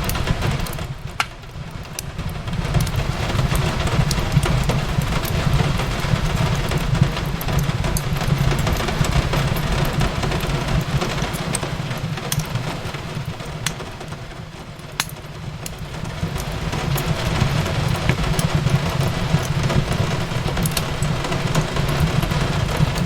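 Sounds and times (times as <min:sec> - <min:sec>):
fire crackling and popping: 0:00.0 - 0:23.0
fire low rumble and hiss: 0:00.0 - 0:23.0.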